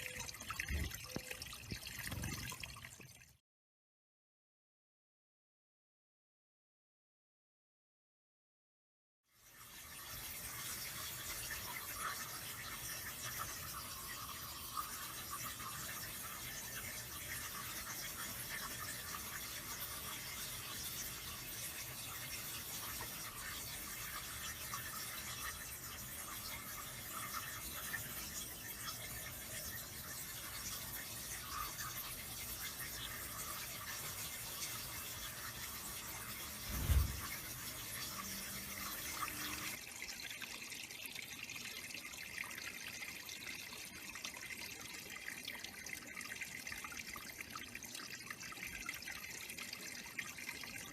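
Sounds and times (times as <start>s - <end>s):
water trickling: 0.0s - 3.4s, 9.3s - 50.9s
low thump: 36.7s - 37.4s.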